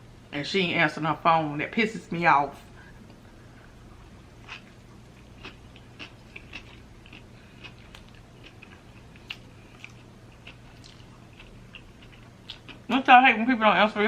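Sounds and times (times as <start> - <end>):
person chewing food: 3.9 - 12.9.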